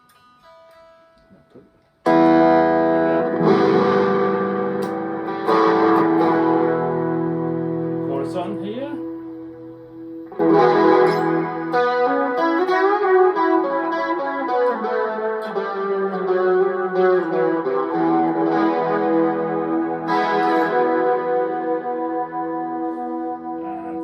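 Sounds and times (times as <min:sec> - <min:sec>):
electric guitar with chorus effect: 0:00.0 - 0:24.0.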